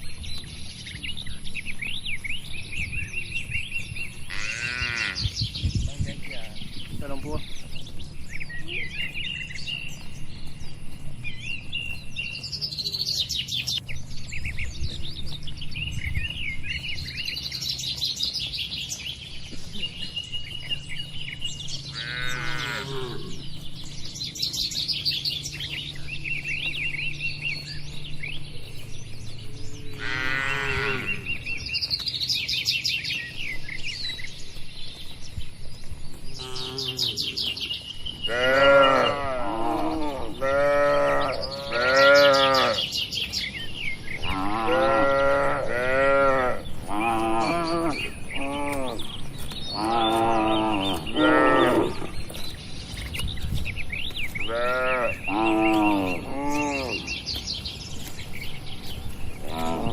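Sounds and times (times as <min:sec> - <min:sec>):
birds chirping: 0:00.0 - 0:59.9
cattle mooing: 0:04.3 - 0:05.2, 0:21.9 - 0:23.4, 0:29.9 - 0:31.3, 0:36.4 - 0:37.3, 0:38.2 - 0:42.9, 0:44.2 - 0:49.1, 0:49.8 - 0:52.2, 0:54.4 - 0:57.1, 0:59.4 - 0:59.9.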